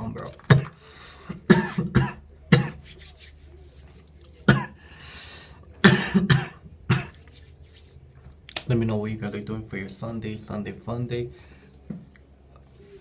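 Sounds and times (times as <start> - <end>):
man coughing: 0.5 - 0.8, 1.5 - 2.8, 4.4 - 4.8, 5.8 - 7.2.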